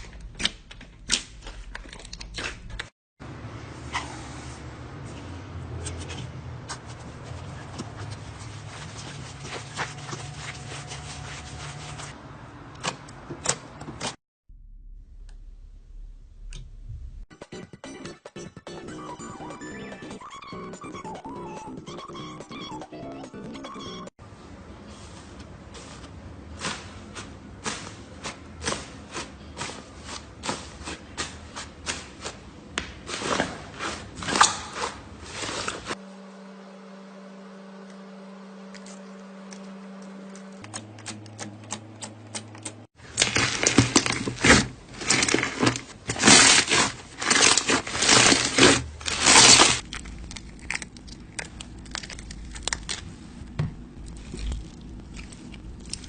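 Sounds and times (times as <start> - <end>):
slime crackling and popping: 46.2 - 53.1.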